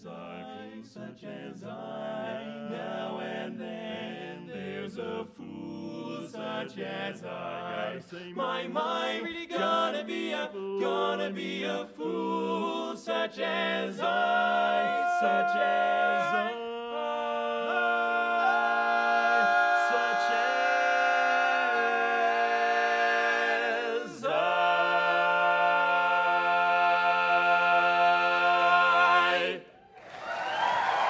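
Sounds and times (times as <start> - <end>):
a cappella harmony singing: 0.0 - 31.0
audience applause: 29.8 - 31.0.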